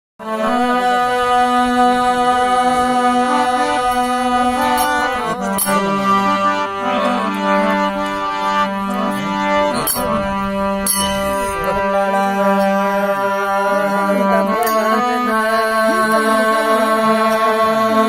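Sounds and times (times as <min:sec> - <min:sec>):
organ-like held chords: 0:00.2 - 0:18.0
low drone: 0:00.6 - 0:18.0
light percussive strikes: 0:03.9 - 0:06.0, 0:09.7 - 0:11.8.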